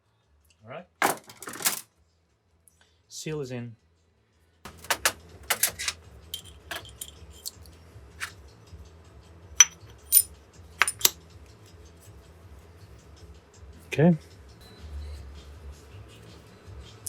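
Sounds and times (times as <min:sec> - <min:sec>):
small metal parts clinking: 0:01.0 - 0:01.8, 0:04.7 - 0:08.3, 0:09.6 - 0:11.2.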